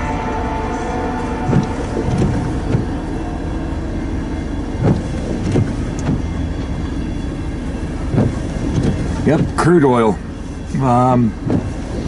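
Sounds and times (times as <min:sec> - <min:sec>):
freight train rumbling past: 0:00.0 - 0:12.0
sharp wheel knocks: 0:01.5 - 0:03.0.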